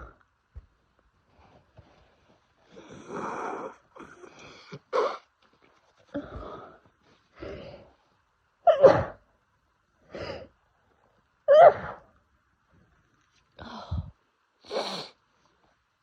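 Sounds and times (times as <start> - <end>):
gasping in-breaths: 13.6 - 15.2
person sneezing: 14.7 - 15.2.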